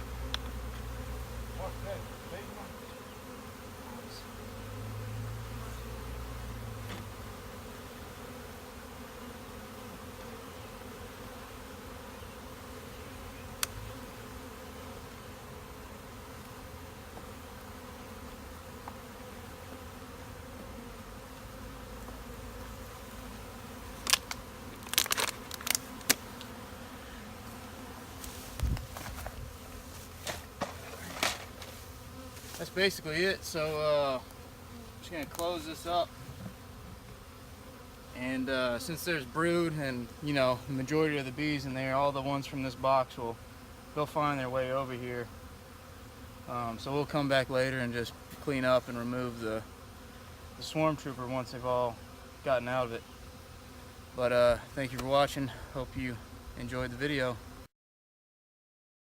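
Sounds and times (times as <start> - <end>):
honeybees buzzing: 0.0 - 57.7.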